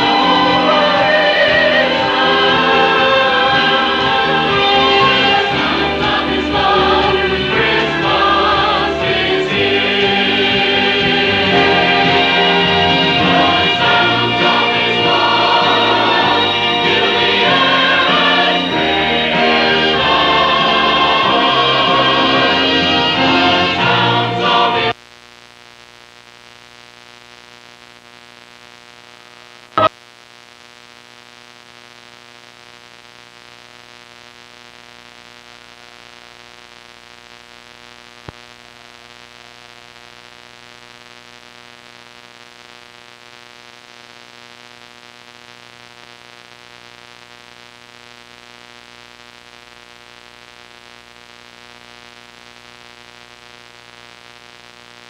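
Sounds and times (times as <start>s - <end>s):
choir music: 0.0s - 24.9s
tape playback hiss and hum: 0.0s - 55.0s.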